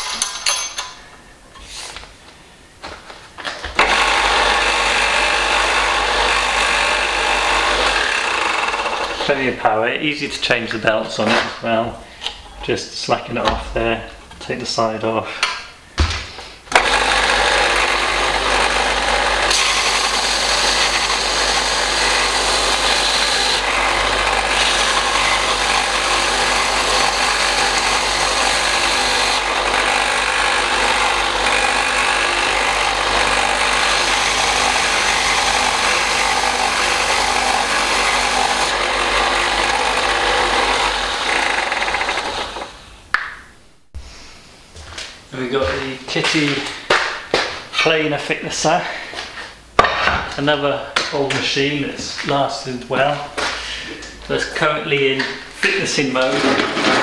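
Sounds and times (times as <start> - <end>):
belt sharpening grinder running: 3.8 - 9.6, 16.7 - 43.2, 56.2 - 57.0.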